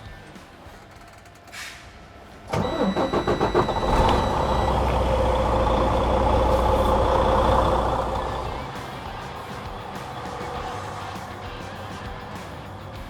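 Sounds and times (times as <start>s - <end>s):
high warning tone: 2.5s - 8.7s
truck diesel engine cranking and running: 2.5s - 11.2s.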